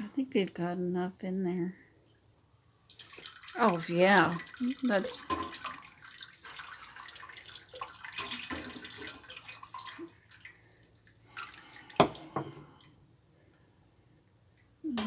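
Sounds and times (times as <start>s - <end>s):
liquid splashing and trickling: 2.0s - 13.2s.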